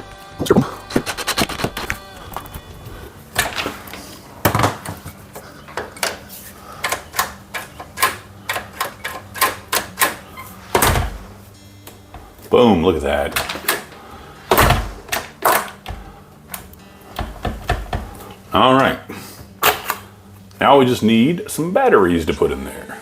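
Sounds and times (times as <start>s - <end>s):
hand tools clicking on metal: 6.8s - 10.2s.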